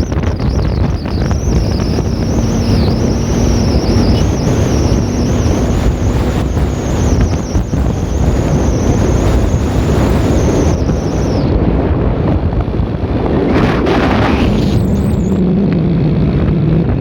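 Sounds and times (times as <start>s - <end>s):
bus engine rumble: 0.0s - 11.4s
faint steady tone: 0.0s - 11.4s
road noise: 0.0s - 17.0s
wind buffeting microphone: 0.0s - 17.0s.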